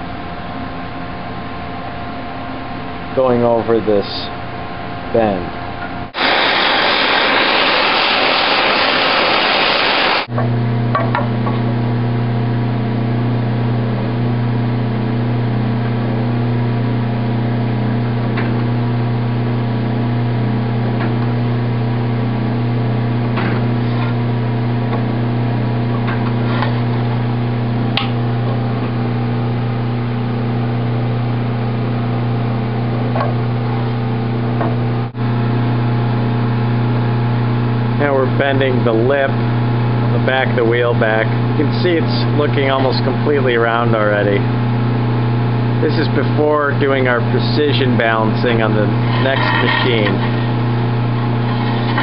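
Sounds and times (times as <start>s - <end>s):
machine motor humming: 5.8s - 10.6s.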